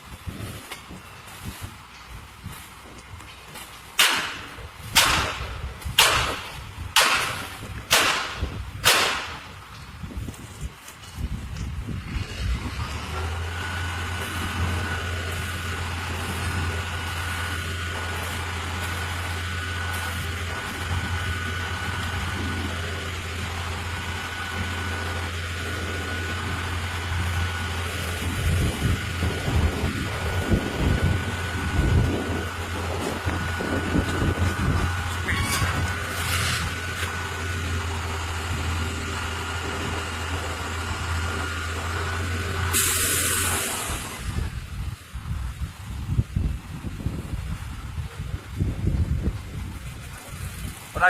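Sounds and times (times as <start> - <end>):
truck engine running: 0.0 - 51.0
concrete pump hissing strokes: 41.7 - 44.5.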